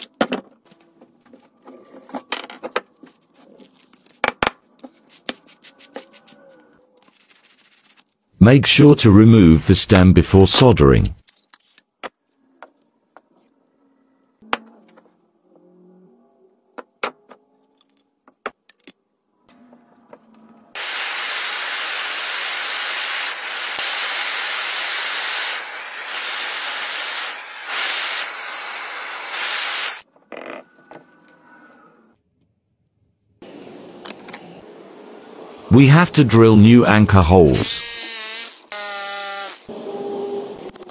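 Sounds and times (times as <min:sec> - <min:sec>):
gas torch hissing: 0:20.8 - 0:30.0.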